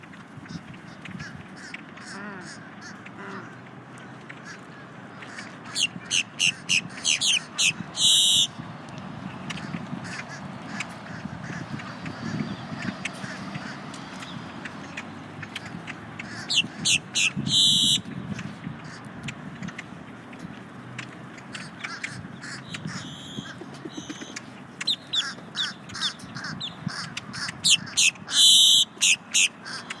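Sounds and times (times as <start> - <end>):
grackle calling: 5.2 - 8.6, 9.5 - 18.1, 21.0 - 30.0
bird squeal: 5.8 - 8.5, 16.6 - 18.0, 28.4 - 29.5.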